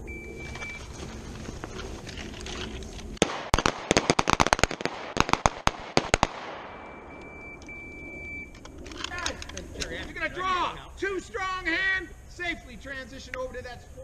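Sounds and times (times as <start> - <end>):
faint electronic beep: 0.0 - 1.0, 6.7 - 8.6
pistol shots: 3.2 - 7.2.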